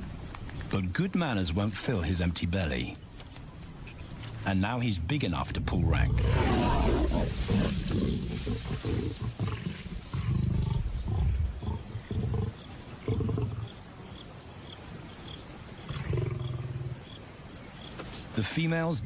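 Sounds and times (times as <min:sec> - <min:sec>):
lions snarling and growling: 0:05.6 - 0:13.8, 0:15.8 - 0:17.0.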